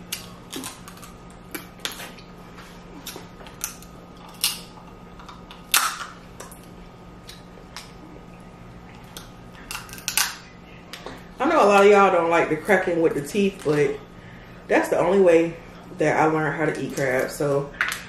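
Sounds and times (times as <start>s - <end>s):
crab shells cracking: 0.1s - 2.0s, 3.0s - 8.0s, 9.1s - 10.5s.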